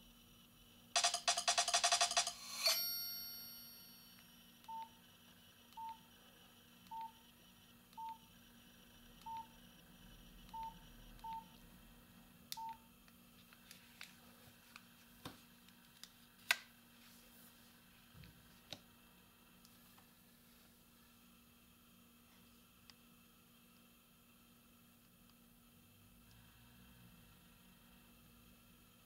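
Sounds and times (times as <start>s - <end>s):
ringtone note: 1.0s - 4.4s.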